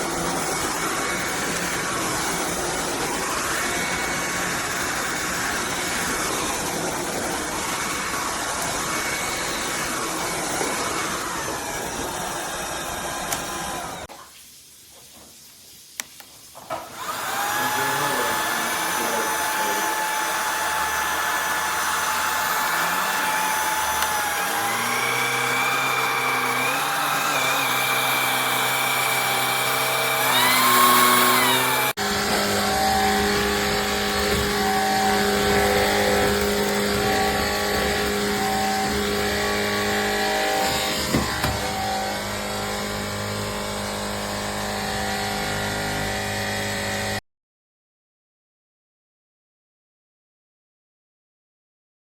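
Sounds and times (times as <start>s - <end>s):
stick vacuum whining: 0.0s - 14.1s, 16.7s - 47.2s
steady machine hum: 18.3s - 45.3s.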